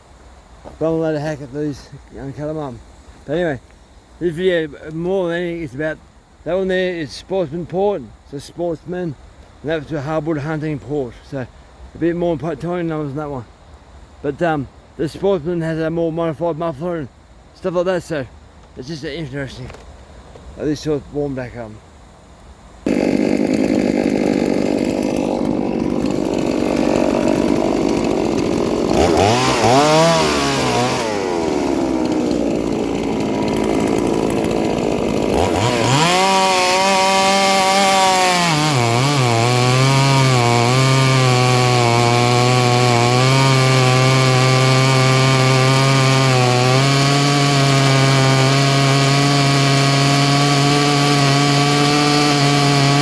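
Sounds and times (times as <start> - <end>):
chainsaw revving: 22.8 - 53.0.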